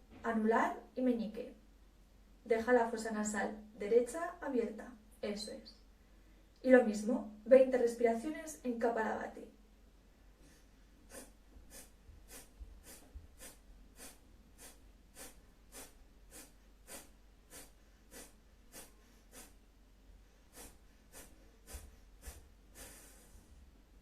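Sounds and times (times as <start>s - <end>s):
woman forceful nasal exhalations: 10.4s - 19.7s, 20.3s - 23.5s
woman long breath: 20.3s - 23.5s.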